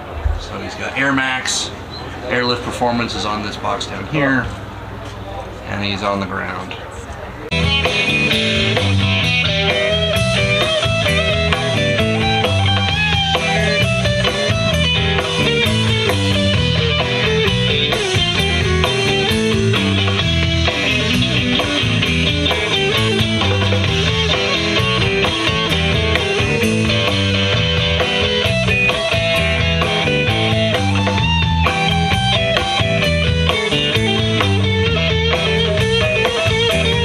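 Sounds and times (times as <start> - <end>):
rock music: 7.5 - 37.0.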